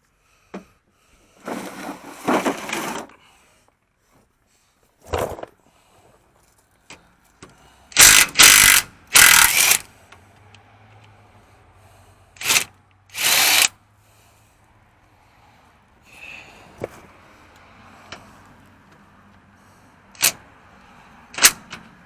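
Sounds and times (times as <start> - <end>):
impact wrench hammering: 8.0 - 9.9, 12.4 - 13.7.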